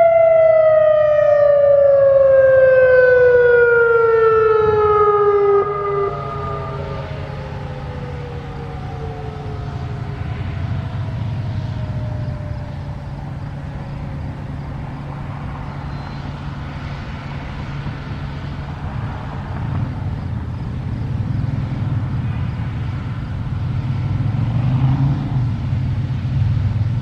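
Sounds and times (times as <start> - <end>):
warning siren winding down: 0.0 - 19.9
road traffic rumble: 0.0 - 27.0.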